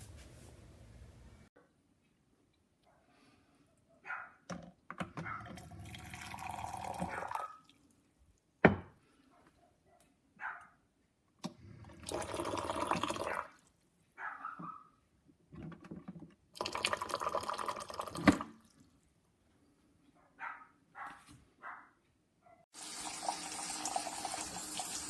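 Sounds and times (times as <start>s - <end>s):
hot water pouring from spout: 5.6s - 7.3s, 12.0s - 13.4s, 16.6s - 18.5s, 22.8s - 25.0s.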